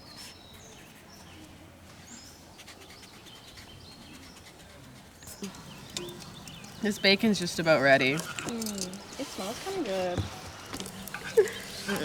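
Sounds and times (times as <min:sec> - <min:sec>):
small birds chirping: 0:00.0 - 0:12.0
soft background hiss: 0:05.0 - 0:12.0.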